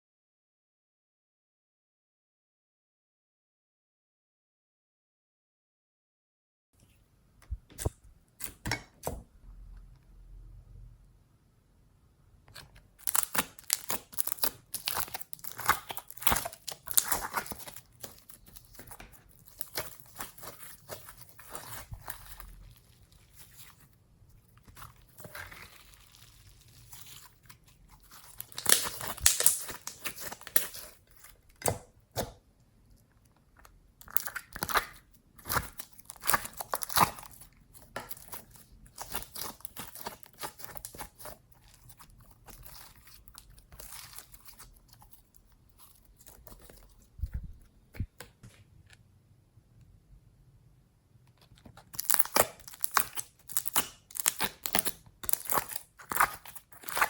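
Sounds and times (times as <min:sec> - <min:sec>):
slime squished by hand: 0:13.0 - 0:32.3, 0:34.0 - 0:48.4, 0:51.8 - 0:57.0.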